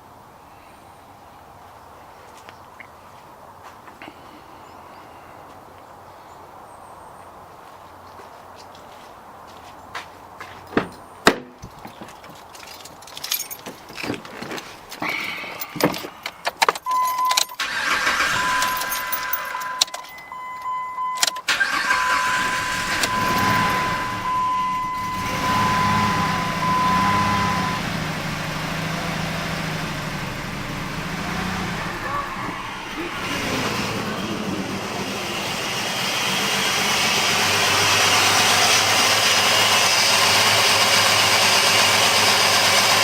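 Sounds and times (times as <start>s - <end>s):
keys jingling and clicks: 11.8s - 21.5s
car engine starting: 16.9s - 43.0s
electronic warning tone: 18.1s - 21.4s, 22.0s - 27.9s
engine rough idle: 22.2s - 43.0s.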